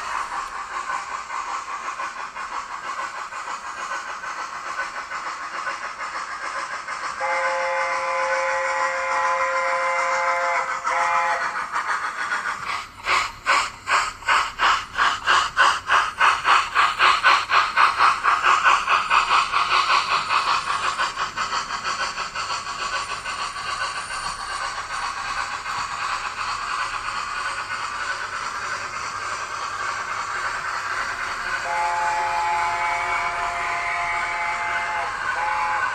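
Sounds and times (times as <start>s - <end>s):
steam exhaust beats from small speaker: 0.0s - 35.9s
steam hiss: 0.0s - 35.9s.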